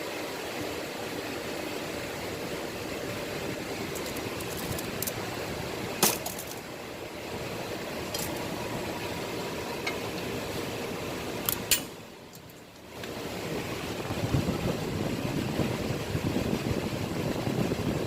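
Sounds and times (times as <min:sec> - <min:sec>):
steady background hum: 0:00.0 - 0:18.0
metal tools clinking: 0:03.9 - 0:05.2, 0:06.0 - 0:06.6, 0:08.1 - 0:08.4.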